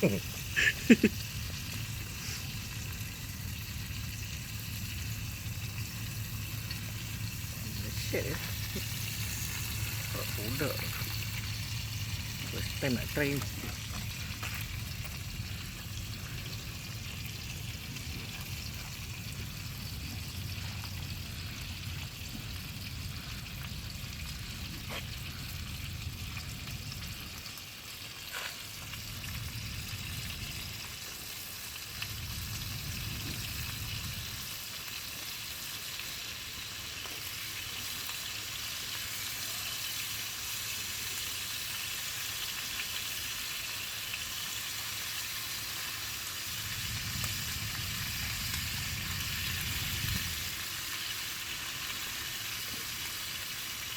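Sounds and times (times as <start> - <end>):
fish frying in a pan: 0.0 - 53.9
low rumble: 0.2 - 27.3, 32.0 - 34.5, 46.5 - 50.5.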